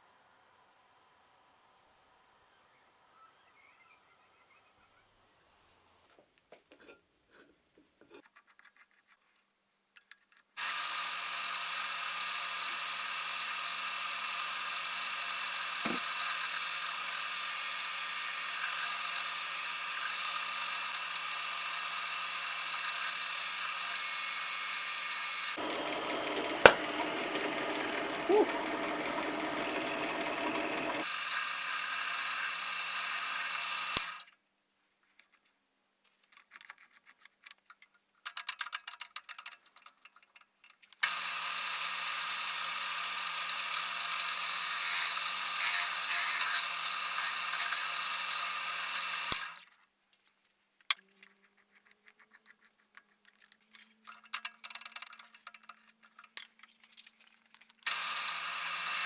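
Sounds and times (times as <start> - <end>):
electric power tool humming: 10.6 - 34.3, 41.0 - 49.6, 57.9 - 59.0
handling clicks and scraping: 34.3 - 41.0, 49.6 - 57.9.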